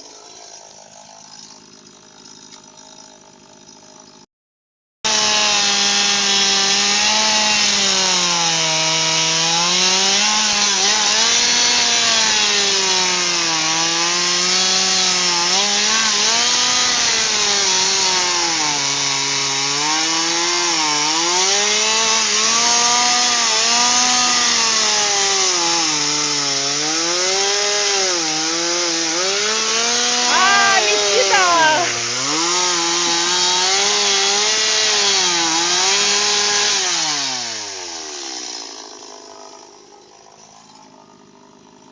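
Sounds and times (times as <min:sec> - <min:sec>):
chainsaw cutting wood: 0:00.0 - 0:04.3, 0:05.1 - 0:41.9.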